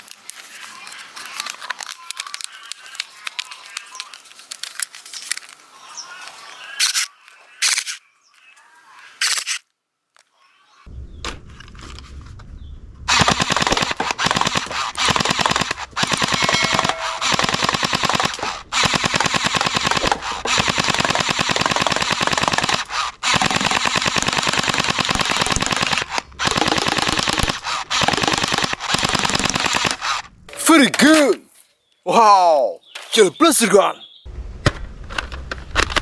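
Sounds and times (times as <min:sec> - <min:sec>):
toy machine gun firing: 0:13.1 - 0:30.2.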